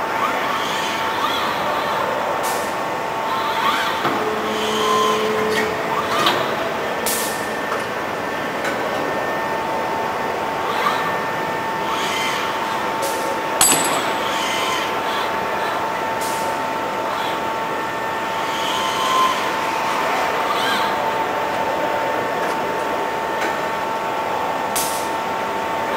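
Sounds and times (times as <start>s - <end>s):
sharp click: 13.6s - 14.4s.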